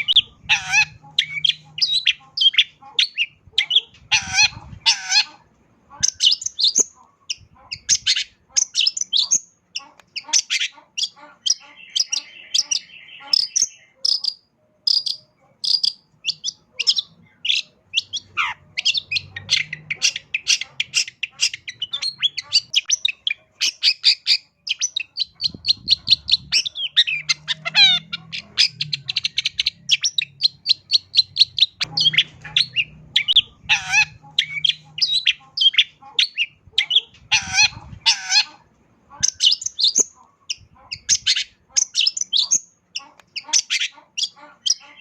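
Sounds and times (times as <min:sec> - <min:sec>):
shrike singing varied song: 0:00.0 - 0:45.0.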